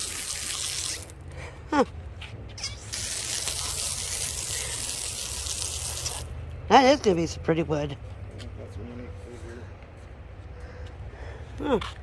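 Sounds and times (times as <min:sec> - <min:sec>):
water spraying hiss: 0:00.0 - 0:01.2, 0:02.9 - 0:06.3.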